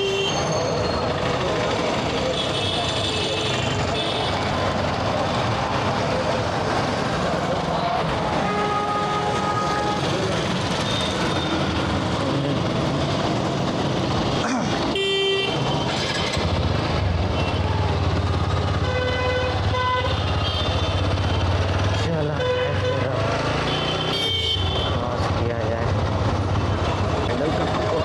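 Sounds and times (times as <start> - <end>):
vehicle horns honking: 0.0 - 0.6, 8.4 - 10.2, 14.9 - 16.0, 18.8 - 21.3, 22.4 - 25.0
busy road traffic: 0.0 - 28.0.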